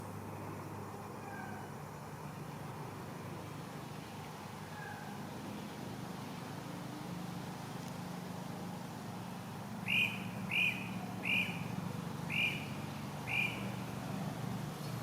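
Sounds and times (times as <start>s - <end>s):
bird chirping: 9.8s - 14.0s.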